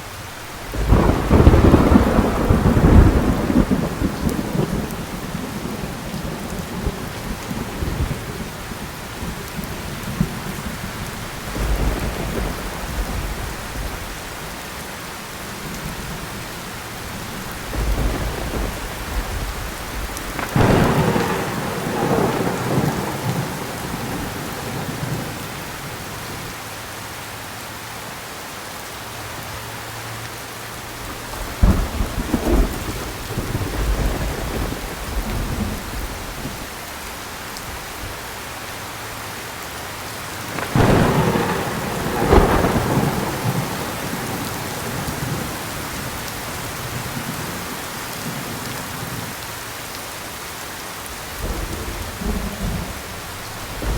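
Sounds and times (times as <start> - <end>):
heavy rain: 0.0 - 53.9
thunder: 0.6 - 14.5, 15.7 - 26.0, 31.0 - 37.0, 40.5 - 48.4, 51.3 - 53.9.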